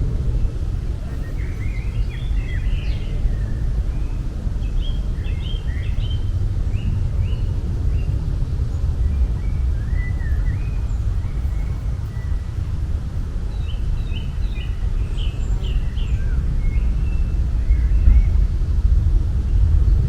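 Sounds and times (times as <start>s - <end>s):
low outdoor rumble: 0.0s - 20.0s
small songbirds chirping: 0.0s - 20.0s.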